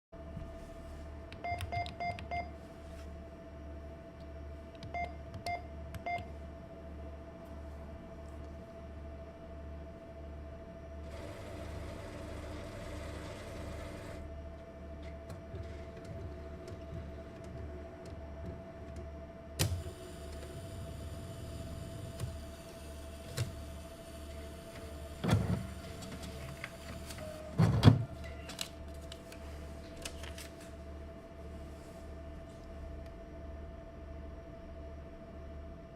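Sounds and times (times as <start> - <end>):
low electrical hum: 0.2 - 35.9
keypad beeps: 1.4 - 2.5, 4.8 - 6.3
cash machine mechanism humming: 11.0 - 14.3, 19.6 - 30.5
mechanical whirr and clunk: 15.0 - 28.7.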